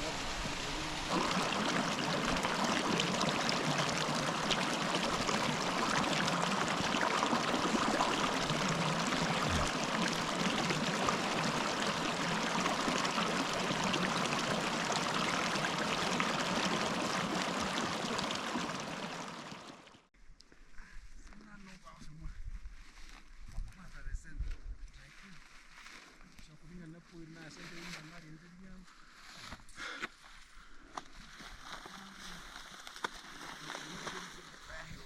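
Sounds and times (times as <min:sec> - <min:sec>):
mountain stream rushing: 0:00.0 - 0:20.0.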